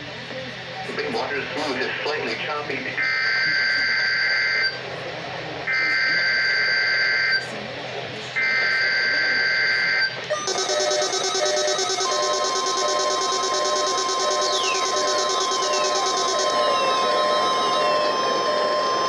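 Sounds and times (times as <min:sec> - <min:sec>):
steady alarm tone: 0:03.0 - 0:04.8, 0:08.4 - 0:19.0
buzzy digital data burst: 0:10.4 - 0:19.0.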